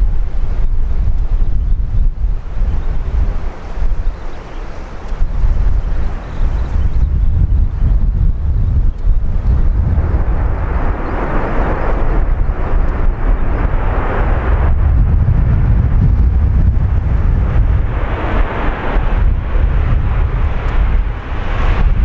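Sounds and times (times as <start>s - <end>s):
wind buffeting microphone: 0.0s - 22.0s
jet engines hissing: 2.0s - 6.9s, 17.0s - 22.0s.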